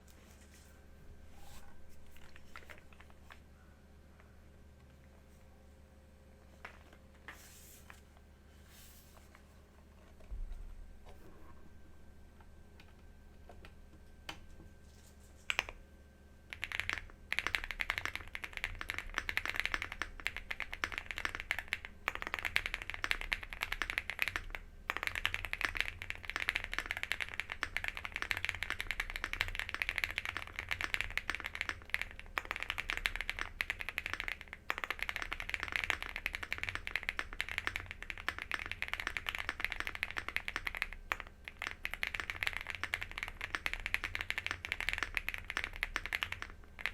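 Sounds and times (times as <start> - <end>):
typing on mechanical keyboard: 16.5 - 46.9.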